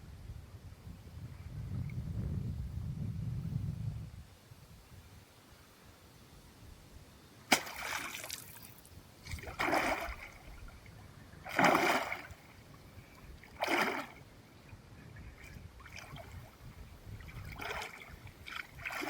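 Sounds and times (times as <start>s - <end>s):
water splashing: 7.5s - 14.3s, 15.3s - 19.0s.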